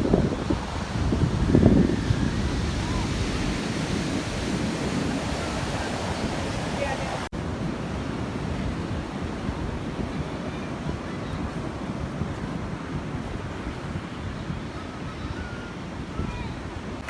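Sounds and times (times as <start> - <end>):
ocean surf on a shore: 0.0 - 17.0
wind buffeting microphone: 0.0 - 17.0.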